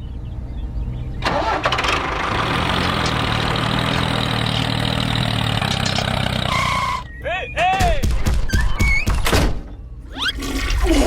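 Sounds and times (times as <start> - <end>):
engine starting and running: 1.2 - 7.0.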